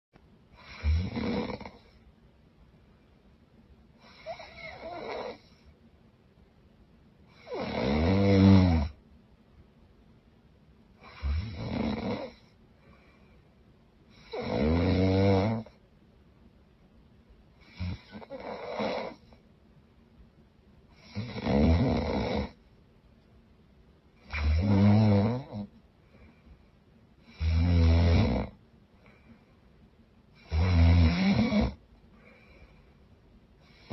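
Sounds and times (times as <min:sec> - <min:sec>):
quiet breathing: 0:00.4 - 0:06.0, 0:10.9 - 0:14.5, 0:24.1 - 0:33.9
woman snoring loudly: 0:00.6 - 0:01.9, 0:04.1 - 0:05.5, 0:07.3 - 0:09.0, 0:11.0 - 0:12.4, 0:14.2 - 0:15.7, 0:17.6 - 0:19.2, 0:21.0 - 0:22.6, 0:24.2 - 0:25.7, 0:27.3 - 0:28.6, 0:30.4 - 0:31.8.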